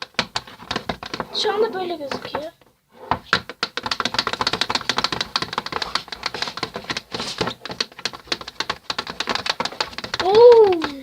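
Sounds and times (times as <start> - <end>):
slime squelching and clicking: 3.3 - 11.0.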